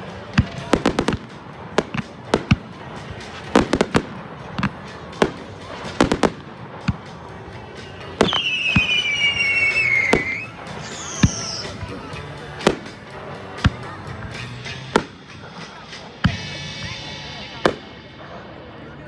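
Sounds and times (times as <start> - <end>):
fireworks bangs and cracks: 0.0 - 18.0
high falling whistle: 8.2 - 11.8.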